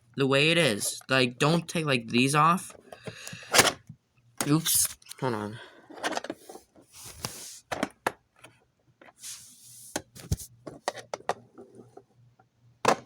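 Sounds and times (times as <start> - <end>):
brief rubbing hiss: 7.0 - 7.7, 9.2 - 9.9.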